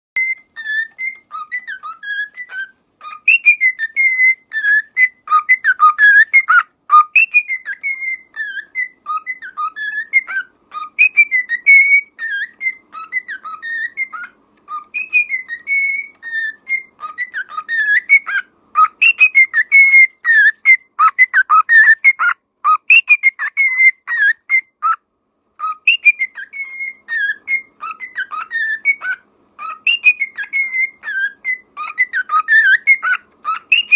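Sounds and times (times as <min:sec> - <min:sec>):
bird whistling and chirping: 0:00.2 - 0:25.0, 0:25.6 - 0:33.9.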